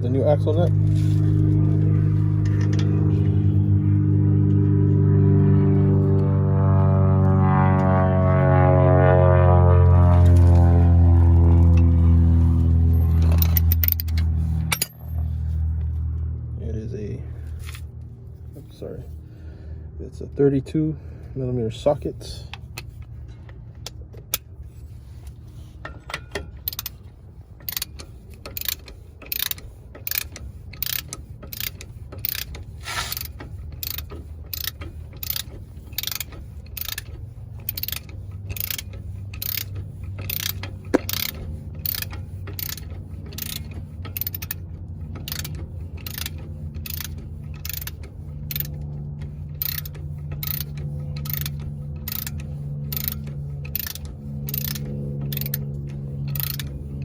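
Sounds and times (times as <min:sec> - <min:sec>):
hand ratchet clicking: 0:12.9 - 0:15.1, 0:25.8 - 0:57.0.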